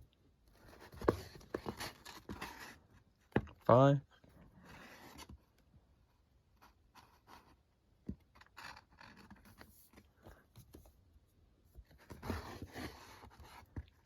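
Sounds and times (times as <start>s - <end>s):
books and paper rustling: 0.5s - 3.1s, 11.6s - 14.0s.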